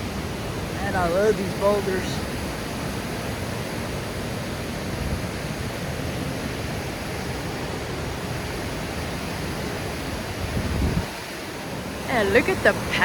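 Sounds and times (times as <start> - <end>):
creek water rushing over rocks: 0.0 - 13.0.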